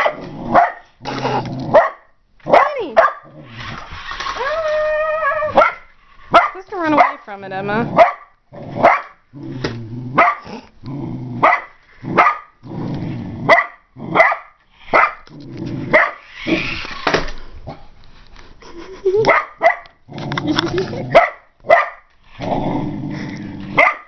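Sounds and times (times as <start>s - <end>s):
dog barking: 0.0s - 0.9s, 1.7s - 3.3s, 5.5s - 7.2s, 8.0s - 9.2s, 10.2s - 10.5s, 11.4s - 12.5s, 13.5s - 15.2s, 15.9s - 16.2s, 19.2s - 19.9s, 21.1s - 22.1s, 23.8s - 24.0s
dog growling: 0.1s - 1.8s, 7.7s - 14.2s, 22.3s - 23.8s.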